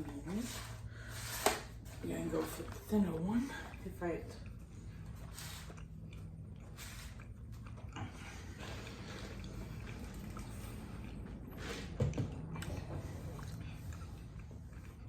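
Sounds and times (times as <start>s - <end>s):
wet chewing and biting: 4.4s - 15.0s.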